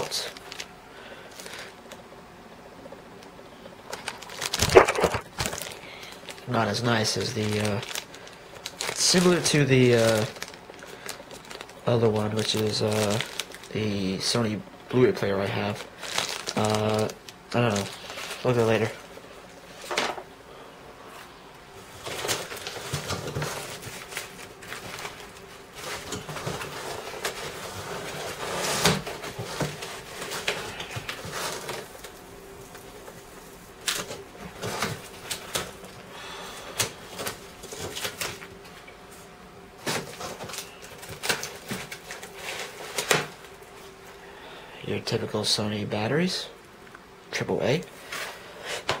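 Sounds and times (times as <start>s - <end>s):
plastic and cardboard rustling: 0.0s - 2.0s, 3.6s - 20.3s, 21.2s - 44.0s
faint steady hum: 0.0s - 49.0s.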